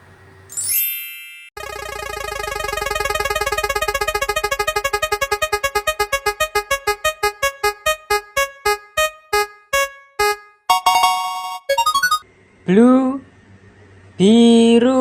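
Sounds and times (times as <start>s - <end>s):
electronic keyboard notes repeating: 1.6s - 12.2s.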